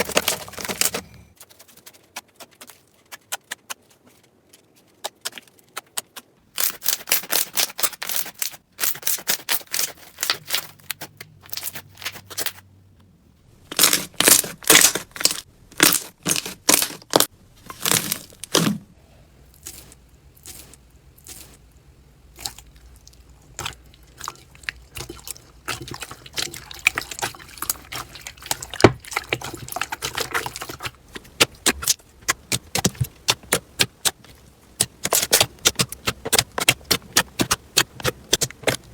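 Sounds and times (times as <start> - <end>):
slime squishing and popping: 24.5 - 38.9.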